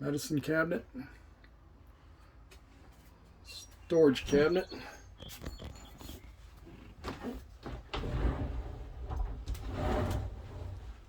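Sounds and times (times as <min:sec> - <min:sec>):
sliding rub and rumble: 0:06.8 - 0:11.0.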